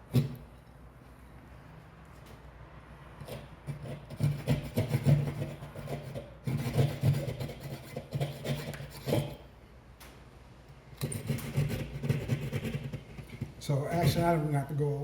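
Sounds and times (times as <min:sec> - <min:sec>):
hand saw rasping through drywall: 0:00.0 - 0:00.4, 0:03.2 - 0:09.4, 0:11.0 - 0:14.3.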